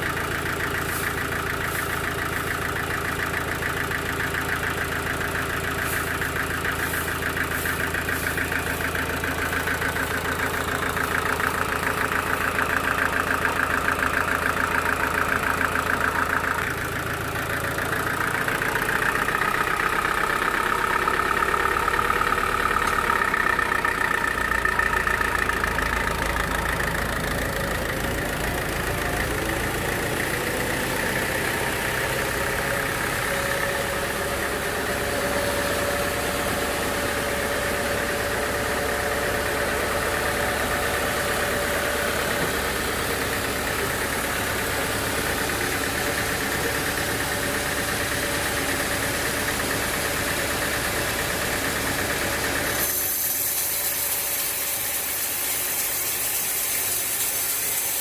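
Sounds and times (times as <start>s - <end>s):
sawmill engine hum: 0.0s - 58.0s
saw whining: 20.3s - 58.0s.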